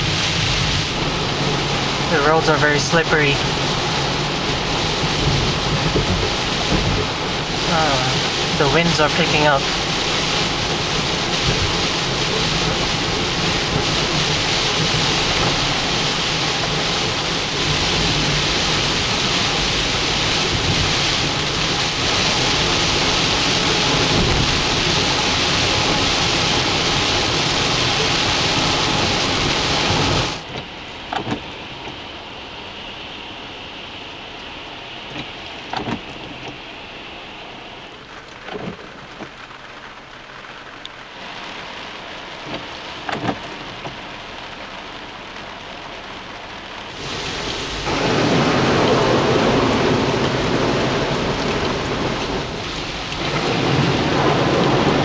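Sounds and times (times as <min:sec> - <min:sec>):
heavy rain in windy storm: 0:00.0 - 0:55.0.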